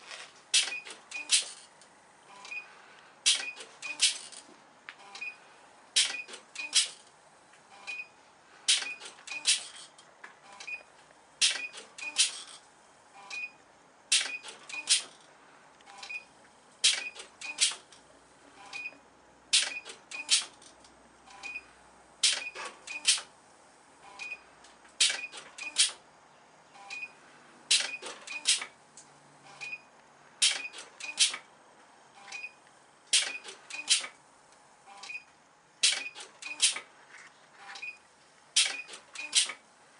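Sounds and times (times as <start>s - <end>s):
sharp mechanical clicks: 0.5s - 2.6s, 3.2s - 4.4s, 5.9s - 7.1s, 8.7s - 10.8s, 11.4s - 12.6s, 14.1s - 18.1s, 18.7s - 21.6s, 22.2s - 23.3s, 24.2s - 26.0s, 27.7s - 29.8s, 30.4s - 31.5s, 32.2s - 34.2s, 35.0s - 36.9s, 37.7s - 39.7s.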